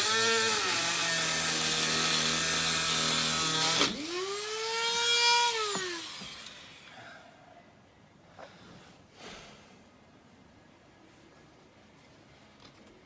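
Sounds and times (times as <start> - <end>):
cutting wheel grinding steel: 0.0 - 6.9
power tool motor spinning down: 0.0 - 6.9.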